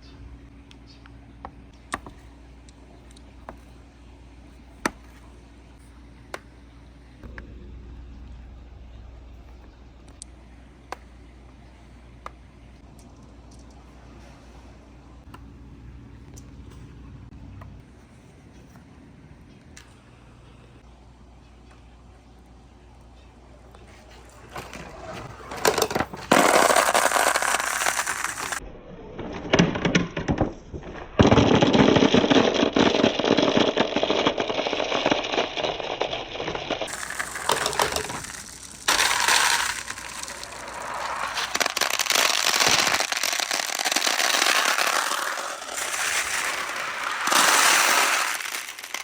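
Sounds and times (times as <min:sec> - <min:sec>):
marbles rolling down wooden tracks: 0:24.4 - 0:28.6, 0:29.2 - 0:49.0.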